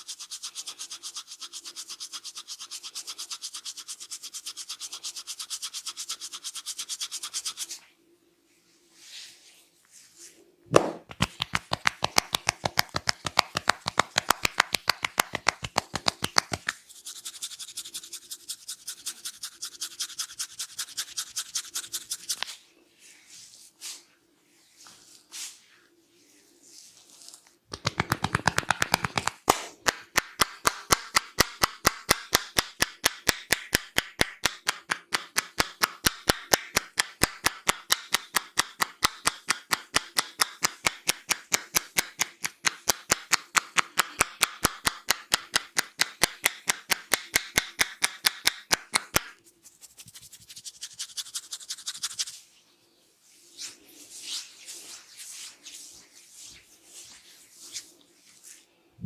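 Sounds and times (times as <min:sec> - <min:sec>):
hands rubbing hair and skin: 0:09.0 - 0:52.6, 0:53.2 - 0:58.6
hands slapping a head: 0:10.7 - 0:16.8, 0:27.7 - 0:49.4.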